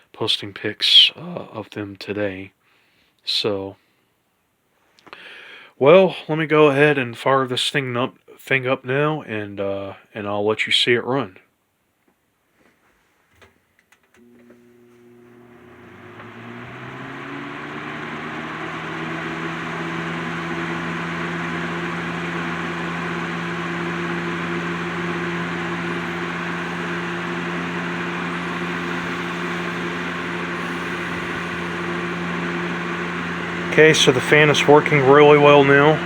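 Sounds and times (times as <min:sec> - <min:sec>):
box fan motor hum: 0:14.2 - 0:36.0.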